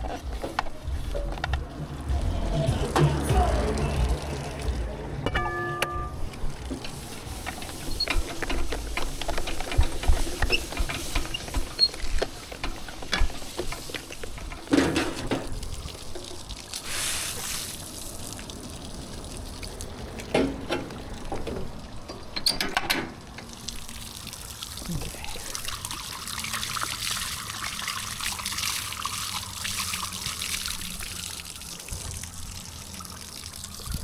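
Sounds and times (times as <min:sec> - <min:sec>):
water splashes: 0:00.0 - 0:34.0
water dripping on concrete: 0:00.6 - 0:04.9, 0:15.5 - 0:22.3.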